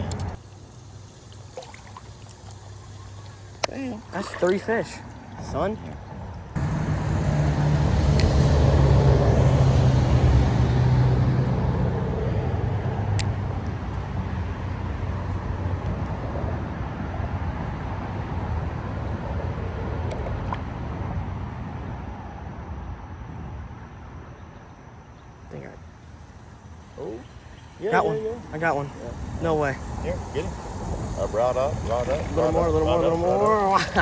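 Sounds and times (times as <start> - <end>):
vehicle engine running: 6.6 - 15.8.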